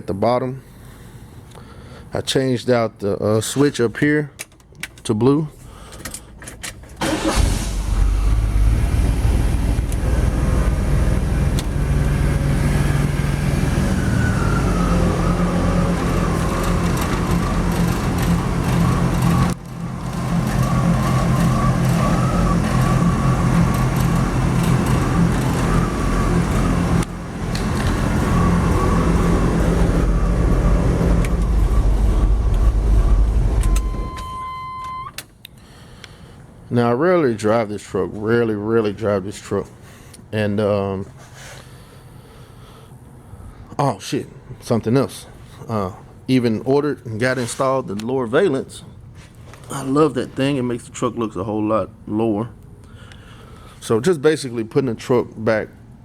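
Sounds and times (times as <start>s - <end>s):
pickup truck engine and road noise: 6.0s - 36.6s
short steady beep: 33.6s - 35.2s.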